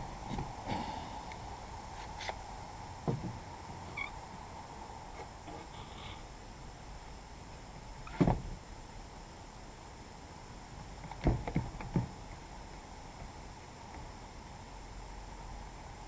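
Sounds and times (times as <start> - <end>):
low steady hum: 0.0 - 16.0
faint squeaks: 3.8 - 4.2, 5.1 - 6.3.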